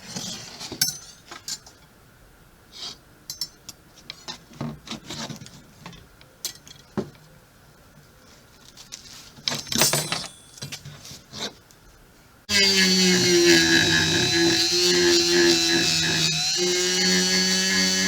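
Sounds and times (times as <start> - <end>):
light metal clinks and taps: 3.3 - 3.8.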